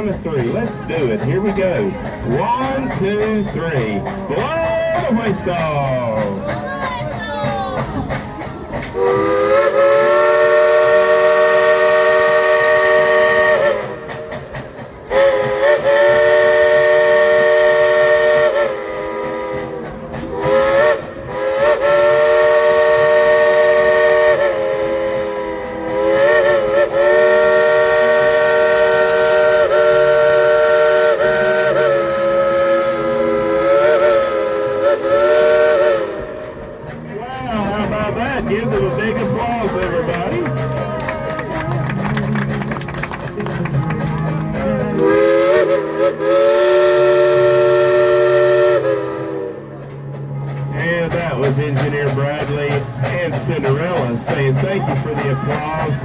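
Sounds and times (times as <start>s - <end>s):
steam hissing: 0.0s - 40.7s, 44.5s - 56.0s
steam whistle blasts: 8.9s - 36.8s, 44.5s - 50.2s.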